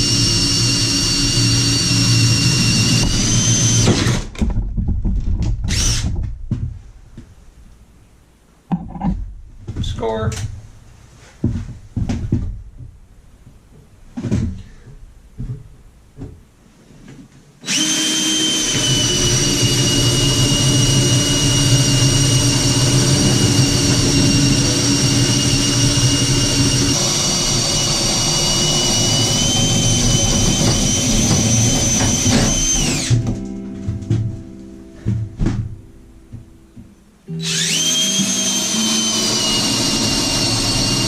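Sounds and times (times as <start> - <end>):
power tool motor whining: 0.0 - 4.3, 17.6 - 33.2, 37.4 - 41.0.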